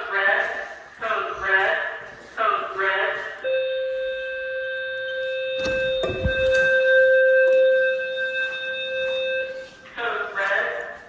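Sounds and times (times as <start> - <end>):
voice evacuation message: 0.0 - 11.0
fire alarm horn tone: 3.4 - 10.4
knocks and low thump: 5.6 - 6.8.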